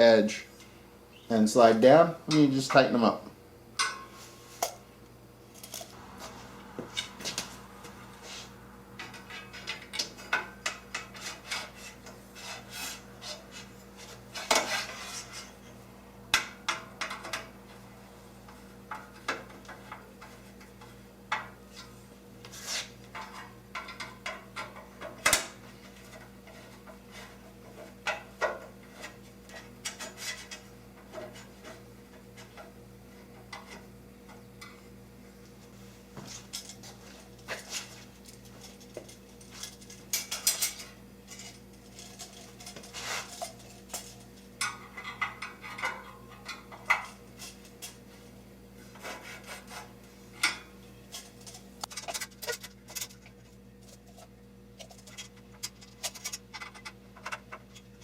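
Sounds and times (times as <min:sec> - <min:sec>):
metal braces scraping: 0:05.5 - 0:15.8, 0:25.8 - 0:32.6, 0:36.3 - 0:48.0.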